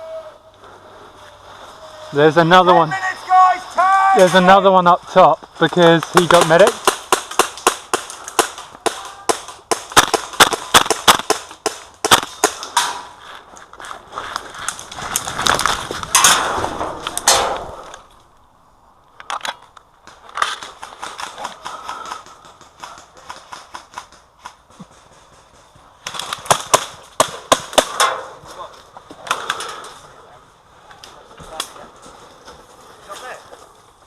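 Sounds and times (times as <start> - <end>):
airsoft guns firing: 6.1 - 12.9.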